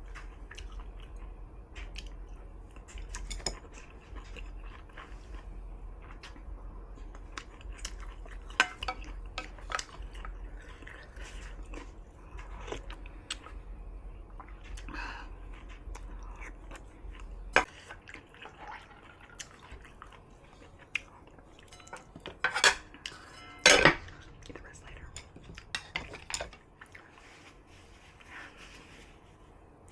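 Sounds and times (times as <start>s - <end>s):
low steady hum: 0.0s - 29.9s
chewing with wet mouth clicks: 0.1s - 5.4s, 6.0s - 13.6s, 15.5s - 21.7s.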